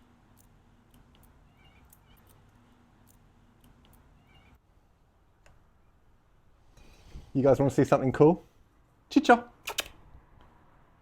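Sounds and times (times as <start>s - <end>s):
low room hum: 0.0s - 11.0s
faint bird chirps: 1.4s - 2.4s, 4.1s - 4.6s.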